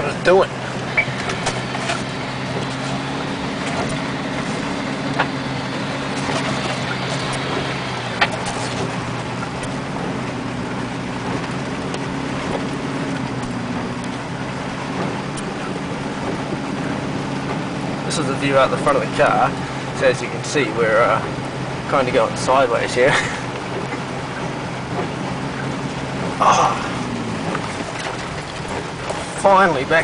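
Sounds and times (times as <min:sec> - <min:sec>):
car engine running under load: 0:00.0 - 0:30.0.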